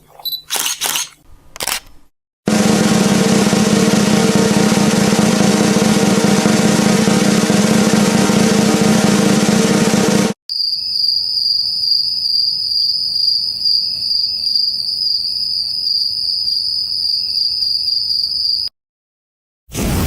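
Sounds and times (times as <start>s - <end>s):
drum roll: 2.5s - 10.4s
loud sound effect: 2.5s - 10.4s, 19.7s - 20.0s
crickets chirping: 10.5s - 18.7s.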